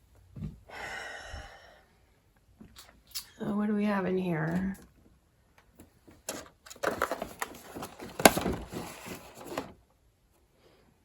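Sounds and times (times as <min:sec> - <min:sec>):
rummaging through bottles and boxes: 0:05.8 - 0:09.8.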